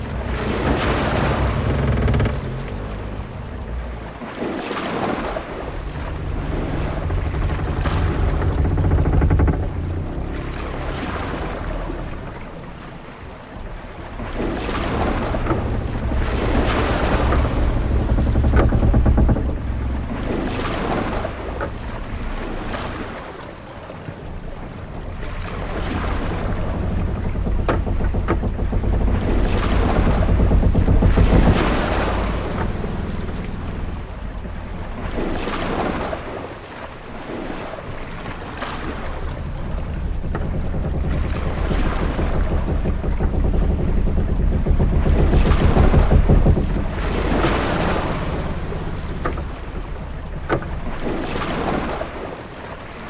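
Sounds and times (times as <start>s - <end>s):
low rumble: 0.0s - 53.0s
waves washing: 0.0s - 53.0s.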